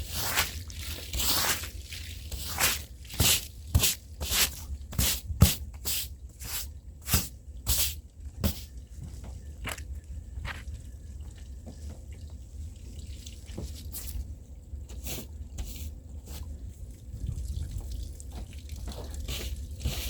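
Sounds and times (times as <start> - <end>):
scrub brush on rug: 0.0 - 8.7, 19.3 - 20.0.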